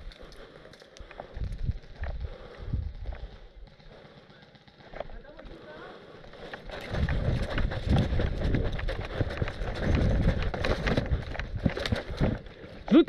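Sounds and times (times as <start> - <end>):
wind buffeting microphone: 1.2 - 3.5, 6.6 - 12.6
gear knocking and rattling: 6.2 - 13.0.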